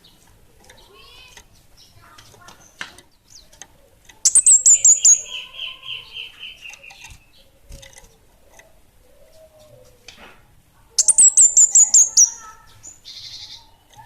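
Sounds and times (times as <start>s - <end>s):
songbird buzzy trill: 0.0s - 7.8s, 11.0s - 14.0s
songbird high chips: 11.0s - 13.7s.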